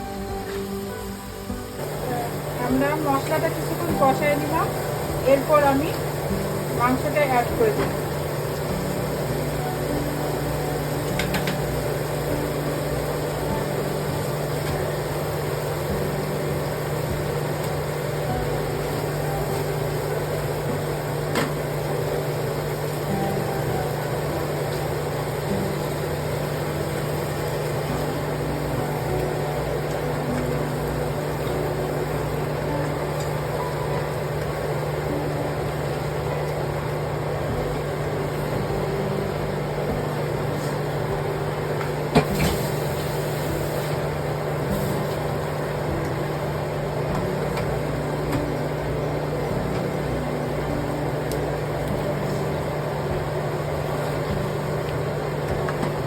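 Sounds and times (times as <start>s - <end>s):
steady mechanical hum: 0.0s - 56.0s.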